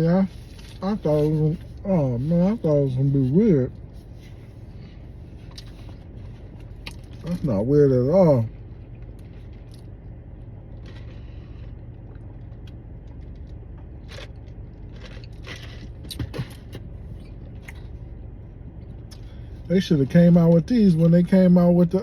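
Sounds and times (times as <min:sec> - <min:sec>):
low rumble: 0:00.0 - 0:22.0
person chewing: 0:04.6 - 0:07.4, 0:10.8 - 0:16.8.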